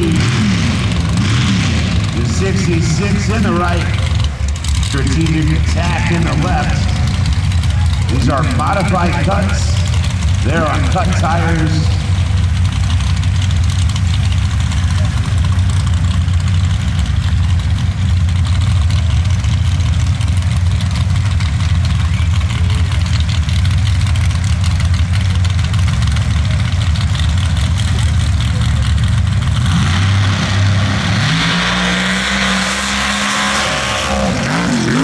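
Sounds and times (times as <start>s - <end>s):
engines at full throttle: 0.0s - 35.0s
racing engines idling: 0.0s - 35.0s.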